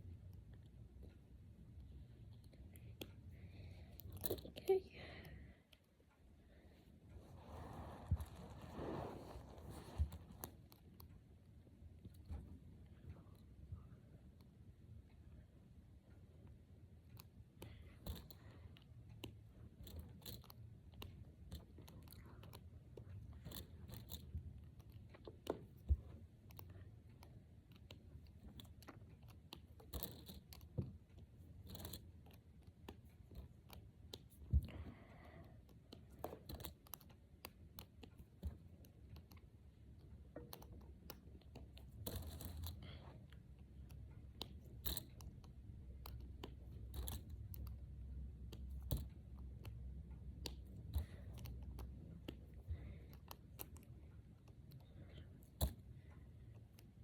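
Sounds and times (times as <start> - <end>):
soft rustling: 6.8 - 10.8.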